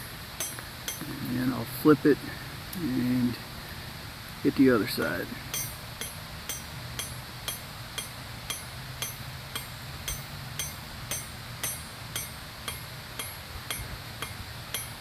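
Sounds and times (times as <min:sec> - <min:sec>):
hammer striking metal on anvil: 0:00.0 - 0:01.3, 0:05.5 - 0:15.0.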